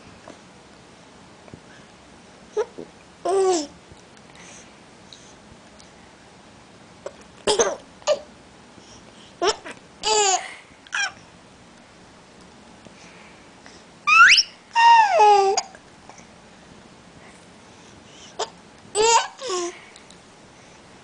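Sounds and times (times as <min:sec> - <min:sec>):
baby squealing and babbling: 0:14.1 - 0:15.7.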